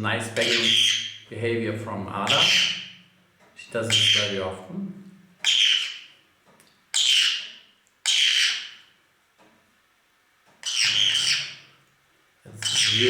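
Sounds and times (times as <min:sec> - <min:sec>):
parrot squawking: 0:00.4 - 0:01.3, 0:02.2 - 0:03.0, 0:03.6 - 0:04.5, 0:05.4 - 0:06.2, 0:06.9 - 0:08.9, 0:10.6 - 0:11.7, 0:12.6 - 0:13.0.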